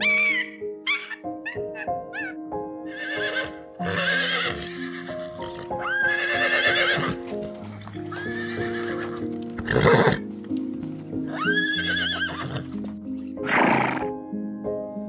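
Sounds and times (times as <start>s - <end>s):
soft background music: 0.0s - 15.0s
horse whinnying: 2.9s - 10.2s, 11.3s - 12.8s.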